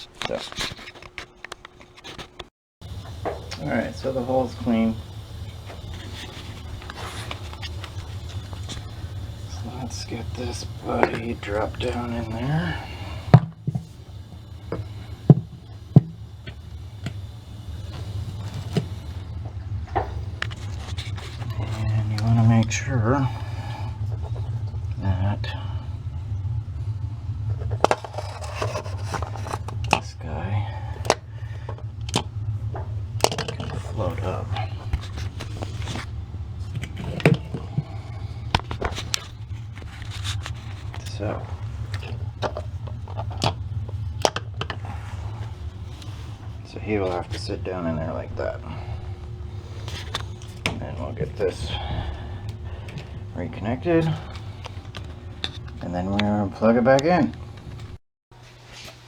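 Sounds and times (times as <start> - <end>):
pump knocking and scraping: 0.0 - 58.0
steady low hum: 0.0 - 59.0
pump knocking against pit: 2.9 - 14.0, 14.6 - 17.3.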